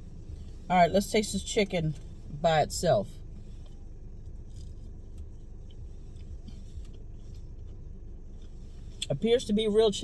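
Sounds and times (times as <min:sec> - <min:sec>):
low background rumble: 0:00.0 - 0:10.0
person chewing: 0:03.6 - 0:09.0.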